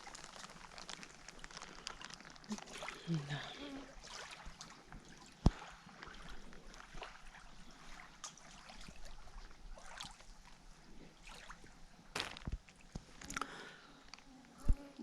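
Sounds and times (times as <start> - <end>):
water lapping and trickling: 0.0 - 15.0.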